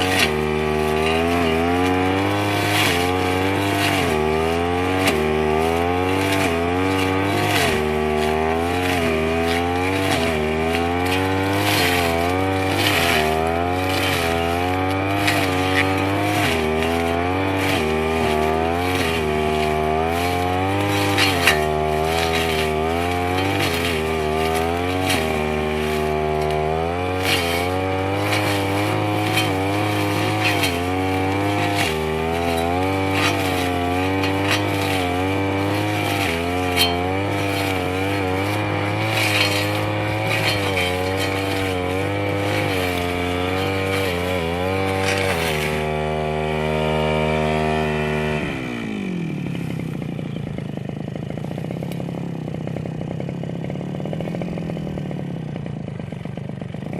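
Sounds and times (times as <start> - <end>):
brush cutter engine: 0.0 - 56.9
short scraping ticks: 27.2 - 46.0.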